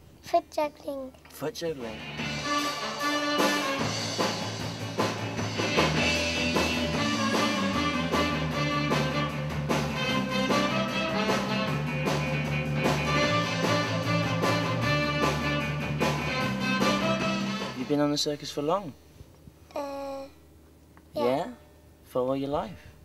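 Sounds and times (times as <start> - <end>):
instrumental music with guitar and drums: 1.8 - 17.8.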